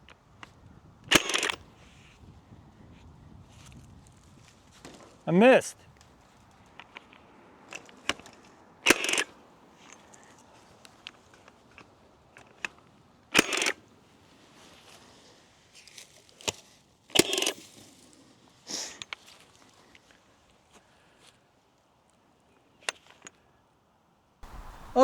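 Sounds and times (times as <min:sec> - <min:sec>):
fence stapler firing shots: 0:01.1 - 0:01.6, 0:08.9 - 0:09.3, 0:13.4 - 0:13.8, 0:17.2 - 0:17.6
small clicks: 0:01.1 - 0:01.6, 0:08.9 - 0:09.3, 0:13.4 - 0:13.8.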